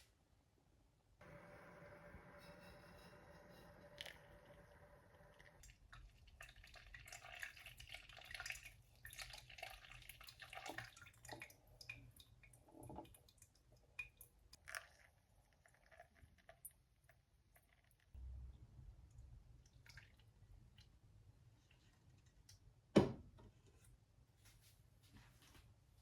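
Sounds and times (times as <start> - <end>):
low hum: 18.2 - 19.5.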